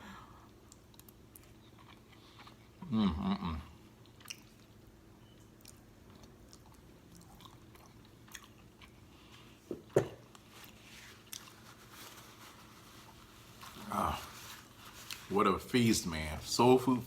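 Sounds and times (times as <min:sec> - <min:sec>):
person biting and chewing food: 0:00.6 - 0:02.9, 0:04.0 - 0:04.8, 0:05.5 - 0:11.8.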